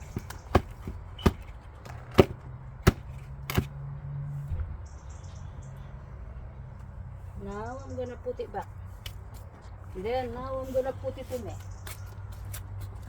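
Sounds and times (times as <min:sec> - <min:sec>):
hard objects knocking: 0:00.0 - 0:03.7.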